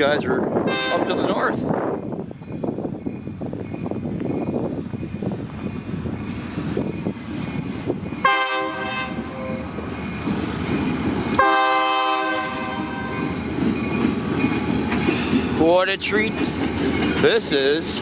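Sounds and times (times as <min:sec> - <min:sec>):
rumble of passing train: 0:00.0 - 0:18.0
locomotive air horn blasts: 0:00.7 - 0:01.2, 0:08.2 - 0:09.6, 0:11.4 - 0:13.2.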